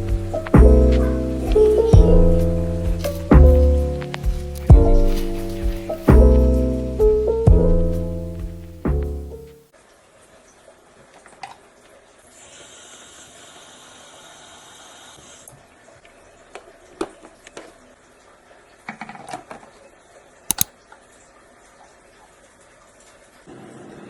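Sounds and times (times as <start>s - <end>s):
sharp clicks: 20.5s - 20.7s.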